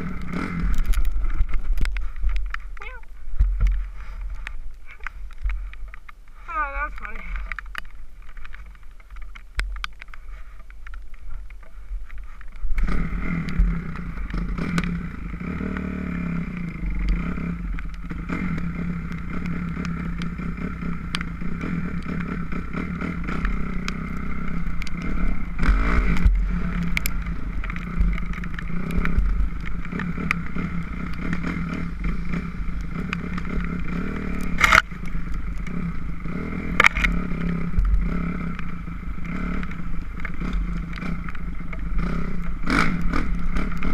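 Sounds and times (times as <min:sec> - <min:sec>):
motorcycle engine running: 0:00.0 - 0:43.9
sharp clicks and knocks: 0:16.6 - 0:36.0, 0:36.6 - 0:43.9.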